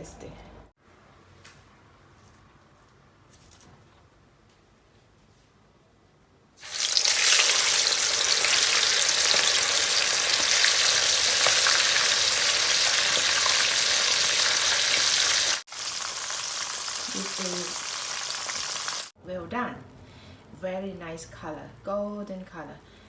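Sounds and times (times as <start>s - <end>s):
fish deep-frying in hot oil: 6.6s - 19.1s.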